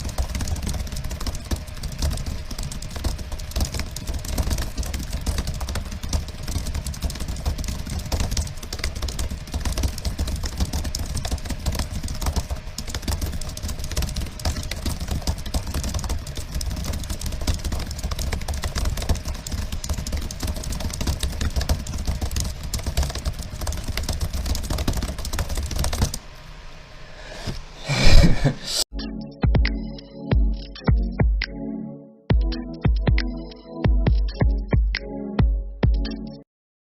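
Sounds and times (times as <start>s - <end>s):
fast typing on keyboard: 0.0s - 26.2s.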